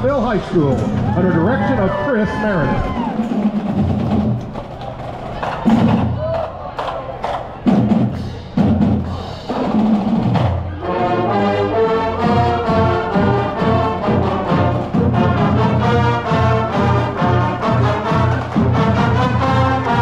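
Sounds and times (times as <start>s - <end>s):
marching band playing a tune: 0.0s - 20.0s.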